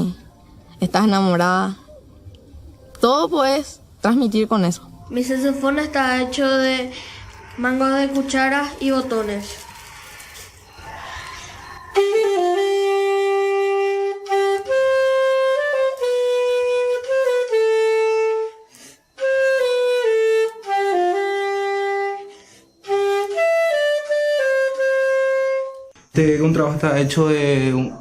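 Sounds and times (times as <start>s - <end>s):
saxophone solo melody: 12.0s - 18.6s, 19.2s - 25.9s.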